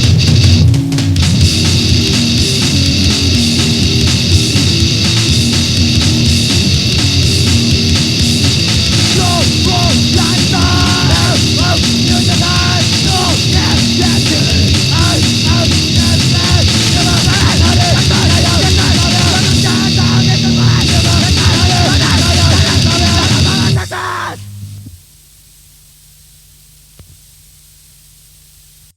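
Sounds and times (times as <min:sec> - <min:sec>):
distorted grindcore band music: 0:00.0 - 0:25.0.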